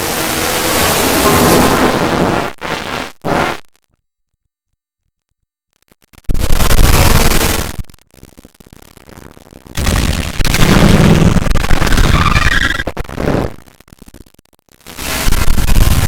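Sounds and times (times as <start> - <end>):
loud harsh noise bursts: 0.0 - 3.6, 9.8 - 13.5
faint crackle: 0.0 - 16.0.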